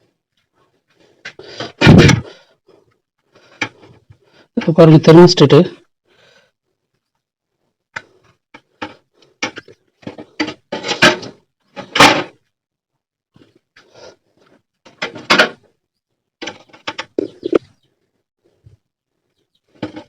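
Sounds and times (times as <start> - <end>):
plastic parts knocking and scraping: 8.0 - 12.4, 13.4 - 15.8, 16.4 - 17.7, 19.7 - 20.0.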